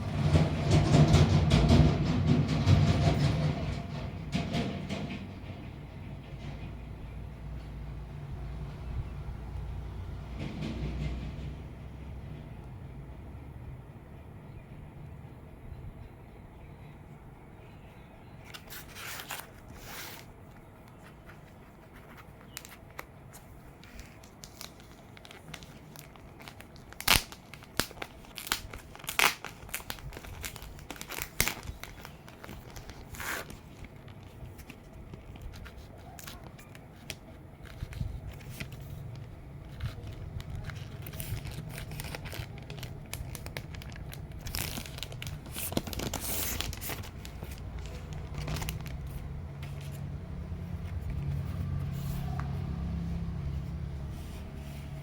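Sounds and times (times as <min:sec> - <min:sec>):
packaging tearing and crinkling: 0:18.4 - 0:50.1.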